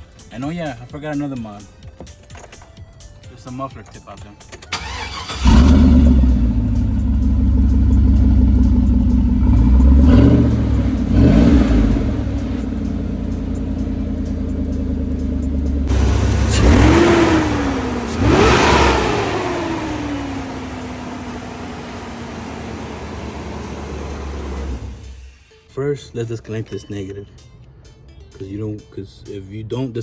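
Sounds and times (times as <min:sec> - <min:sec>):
pickup truck engine revving: 0:04.8 - 0:25.3.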